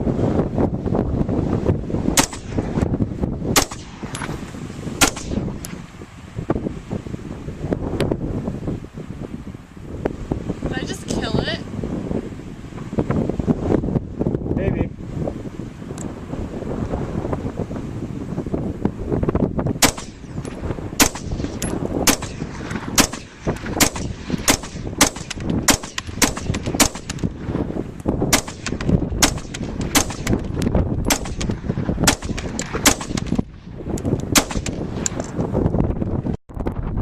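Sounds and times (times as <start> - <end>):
wind noise on microphone: 0.0 - 37.0
rifle shots: 2.2 - 2.8, 3.5 - 4.4, 5.0 - 5.8, 19.8 - 20.4, 21.0 - 27.3, 28.3 - 33.7, 34.3 - 35.1.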